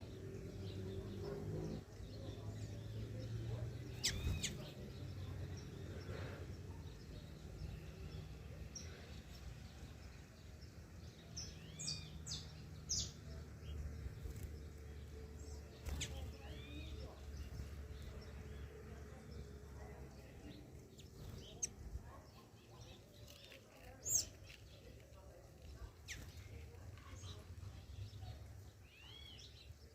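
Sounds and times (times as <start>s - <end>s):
small birds chirping: 0.0s - 29.9s.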